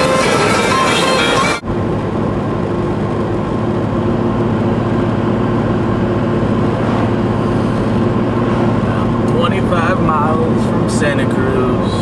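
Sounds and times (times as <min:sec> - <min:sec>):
music: 0:00.0 - 0:01.6
van engine and road noise: 0:00.0 - 0:12.0
constant low hum: 0:01.6 - 0:12.0.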